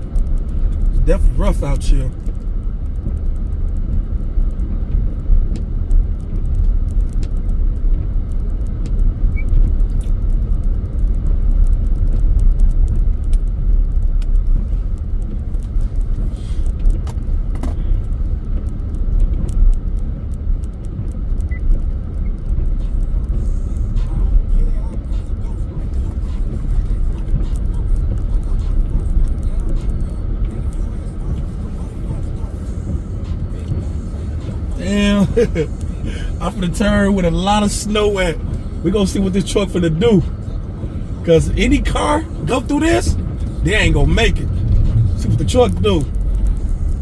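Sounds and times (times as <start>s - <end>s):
truck cab rumble: 0.0s - 47.0s
faint ticks: 2.1s - 25.3s.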